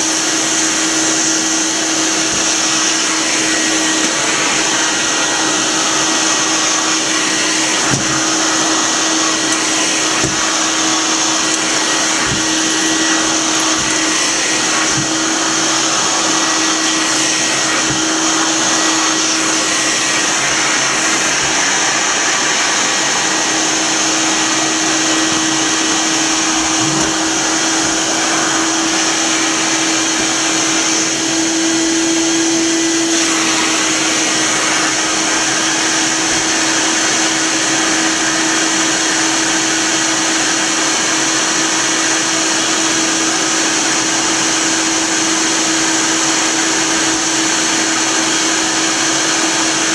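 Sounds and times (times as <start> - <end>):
vacuum cleaner running: 0.0 - 49.9.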